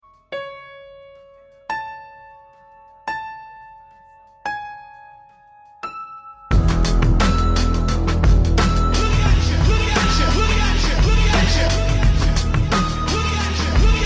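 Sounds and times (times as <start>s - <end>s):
loud electronic beat: 6.5s - 14.0s.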